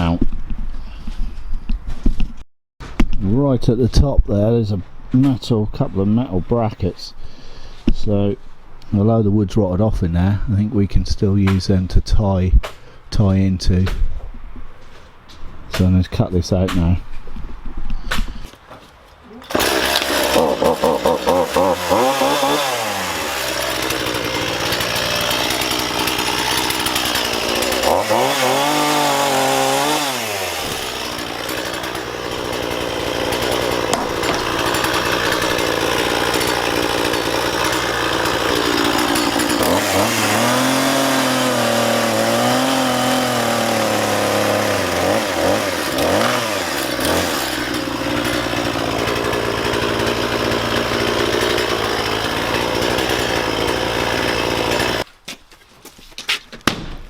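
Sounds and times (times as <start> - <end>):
chainsaw cutting wood: 19.4 - 55.1.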